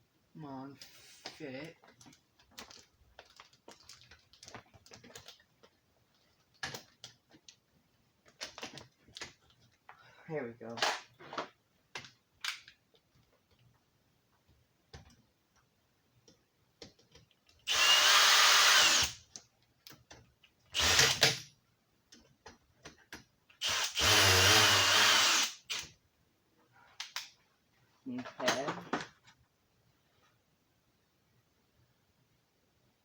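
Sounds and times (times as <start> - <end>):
power drill driving screws: 17.7 - 19.2, 20.8 - 21.4, 23.6 - 25.9.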